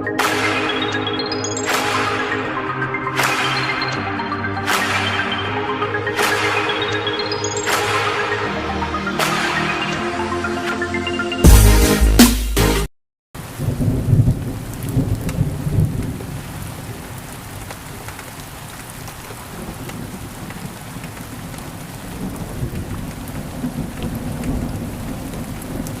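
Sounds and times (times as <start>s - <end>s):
steady rain: 13.4s - 26.0s.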